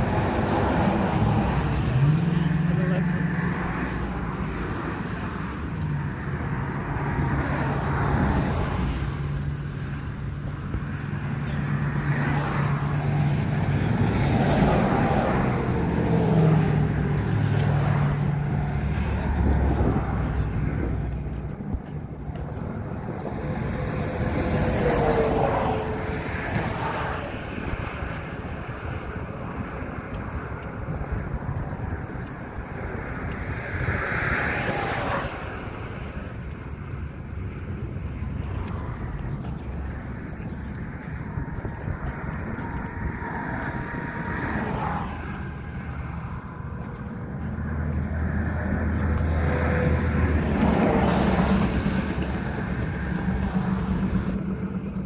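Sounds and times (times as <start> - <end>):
road noise: 0.0 - 55.0
low engine hum: 35.6 - 55.0.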